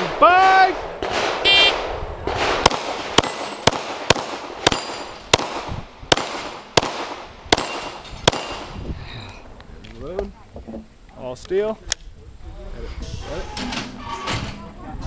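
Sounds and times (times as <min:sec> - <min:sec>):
pistol shots: 0:01.0 - 0:08.8.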